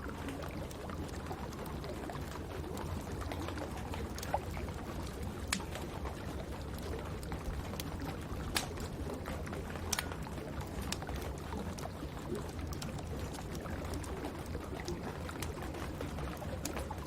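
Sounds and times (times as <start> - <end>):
wood fire crackling: 0.2 - 17.0
fire sharp pops: 8.4 - 9.0, 9.8 - 10.2.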